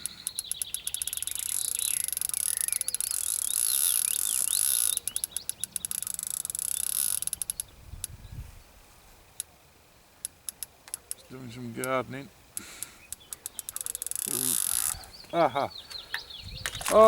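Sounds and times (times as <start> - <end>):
fishing reel clicking: 0.0 - 7.7, 13.2 - 15.0.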